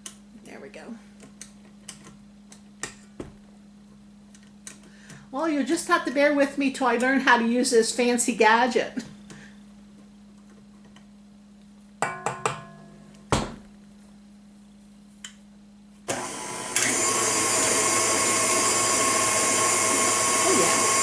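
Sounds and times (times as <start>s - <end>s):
stand mixer motor running: 16.1s - 21.0s.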